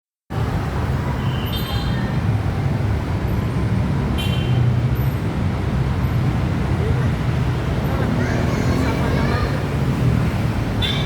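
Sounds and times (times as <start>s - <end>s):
bus engine rumbling: 2.1s - 10.9s.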